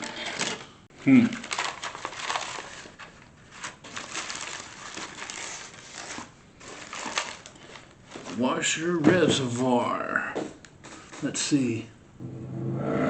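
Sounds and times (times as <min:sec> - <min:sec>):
plastic rustling and crinkling: 0:00.0 - 0:09.6, 0:10.8 - 0:11.5.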